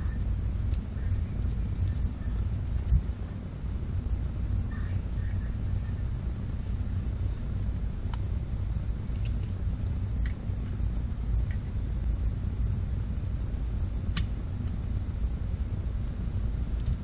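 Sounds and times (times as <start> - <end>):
steady low rumble: 0.0 - 17.0.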